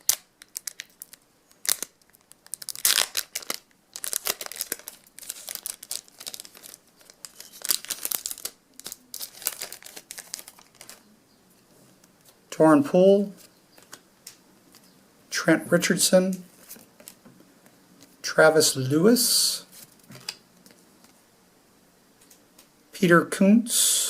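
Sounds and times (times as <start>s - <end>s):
foil wrapper tearing and crinkling: 0.0s - 11.0s.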